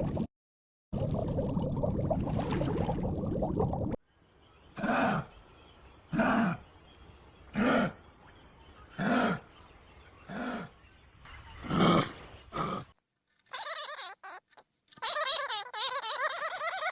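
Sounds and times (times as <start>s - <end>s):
animal calling: 13.5s - 16.9s.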